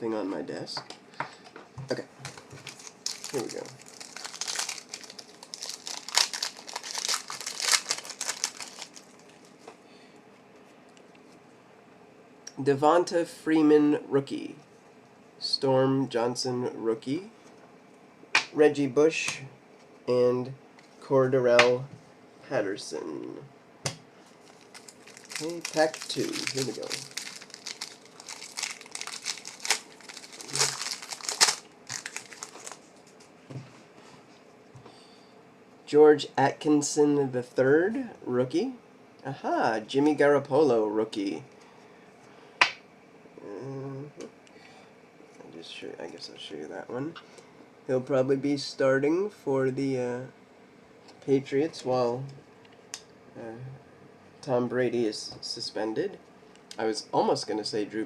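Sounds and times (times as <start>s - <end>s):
plastic wrapper crinkling: 2.3s - 9.7s, 24.3s - 33.2s.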